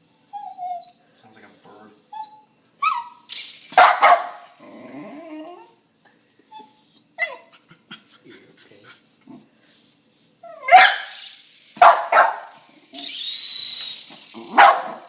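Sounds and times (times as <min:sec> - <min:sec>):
dog whimpering: 0:00.3 - 0:03.3, 0:04.7 - 0:05.8, 0:06.5 - 0:07.7, 0:09.8 - 0:10.8
dog yipping: 0:02.2 - 0:04.4, 0:06.6 - 0:07.6, 0:09.8 - 0:12.5, 0:14.5 - 0:15.0
dog barking: 0:03.8 - 0:04.4, 0:10.6 - 0:11.1, 0:11.8 - 0:12.5, 0:14.5 - 0:15.0.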